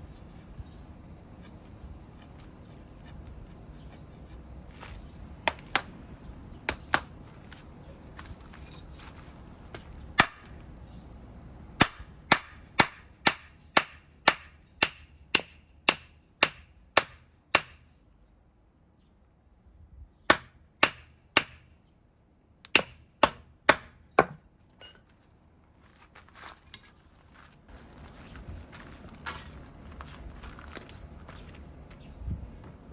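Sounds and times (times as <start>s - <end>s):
insects chirring: 0.0s - 32.9s
tool striking wood: 10.2s - 10.6s, 11.8s - 17.9s, 20.3s - 21.7s, 22.7s - 25.0s.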